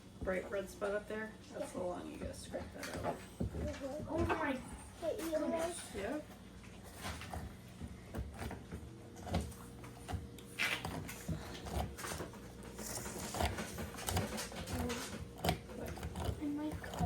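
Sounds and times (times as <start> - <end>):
small knocks and scrapes: 5.1 - 17.0.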